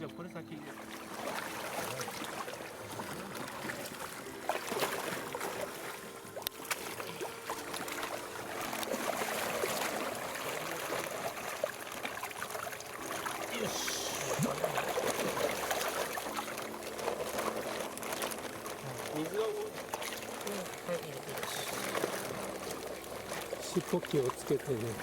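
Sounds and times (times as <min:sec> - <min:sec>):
pond water splashing: 0:00.0 - 0:25.0.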